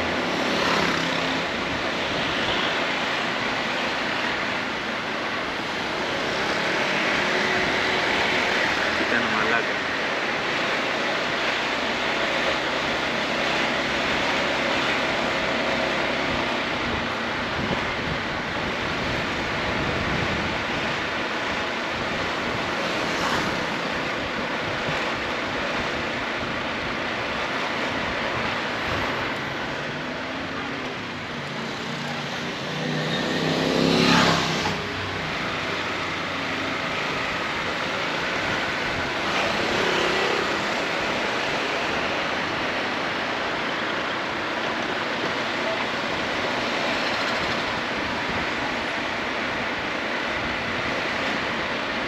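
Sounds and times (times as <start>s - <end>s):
wind and road noise: 0.0s - 52.0s
scooter engine: 27.3s - 42.6s.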